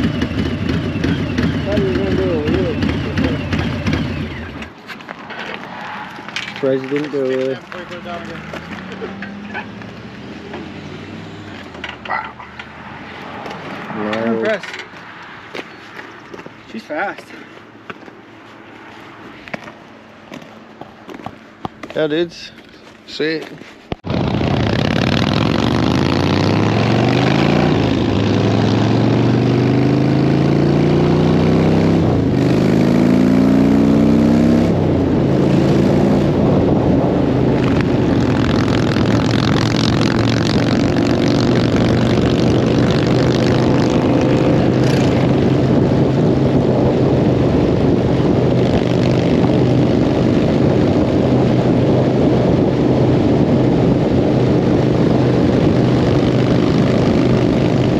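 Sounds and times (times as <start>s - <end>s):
motorcycle engine accelerating: 0.0s - 17.3s, 24.0s - 57.9s
rushing wind noise: 23.7s - 57.9s.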